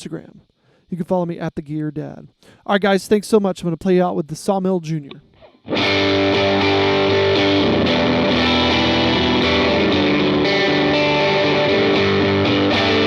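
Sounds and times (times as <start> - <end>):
distorted electric guitar chords: 5.1 - 13.0.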